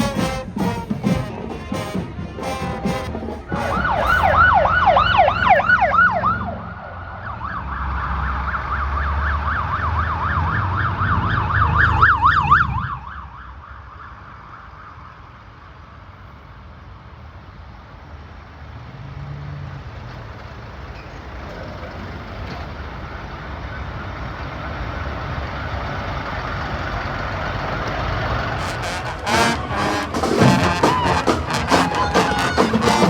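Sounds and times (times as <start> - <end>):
marching band brass and drums: 0.0 - 6.4, 28.6 - 33.0
street noise rumble: 0.0 - 33.0.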